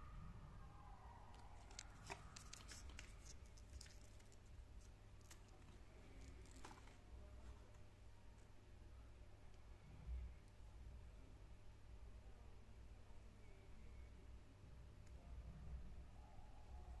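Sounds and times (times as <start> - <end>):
low steady hum: 0.0 - 17.0
watch packaging handling clicks and rustling: 1.6 - 7.6.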